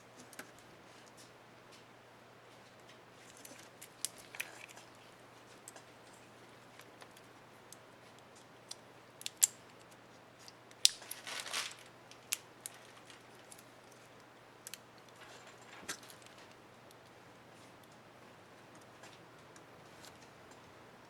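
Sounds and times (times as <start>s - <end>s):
scraping rustle: 11.0s - 11.9s.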